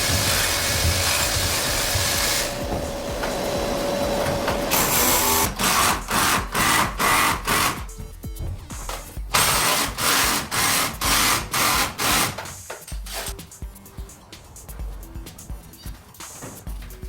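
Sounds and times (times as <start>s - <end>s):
electric power tool whining: 0.0s - 7.8s.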